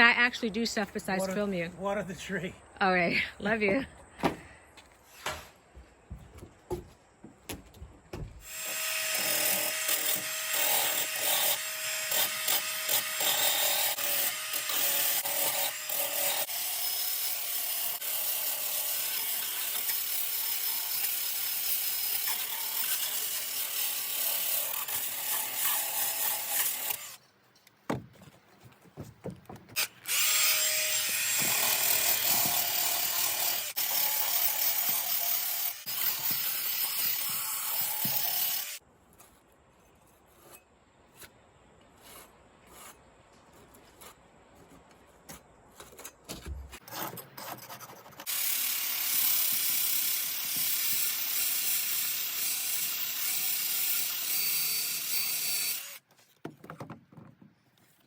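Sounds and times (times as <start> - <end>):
power tool sanding wood: 29.2 - 38.8.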